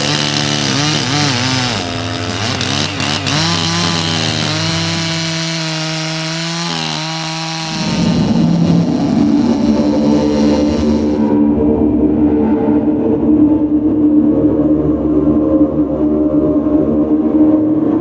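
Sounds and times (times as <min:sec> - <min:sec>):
chainsaw running and cutting: 0:00.0 - 0:11.4.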